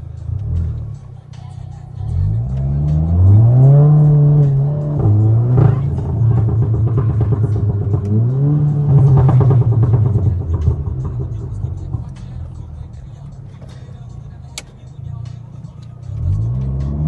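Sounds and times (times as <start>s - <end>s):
car engine revving: 0.0s - 17.0s
exhaust pop: 4.8s - 12.6s.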